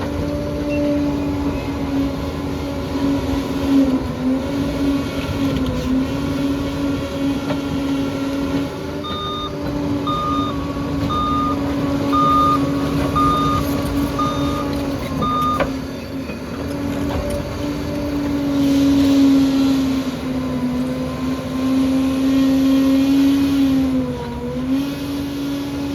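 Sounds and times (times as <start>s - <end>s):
diesel engine running: 0.0s - 25.9s
reversing alarm beeps: 9.0s - 16.2s.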